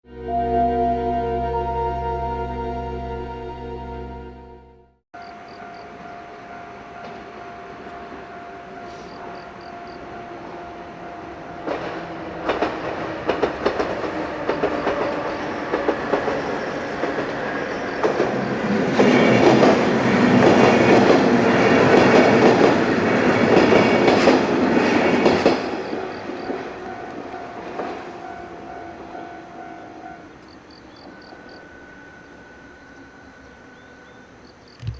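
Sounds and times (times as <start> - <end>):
crossing warning bell ringing: 0.1 - 12.6, 23.8 - 34.6
train wheels clicking over rail joints: 11.6 - 18.4.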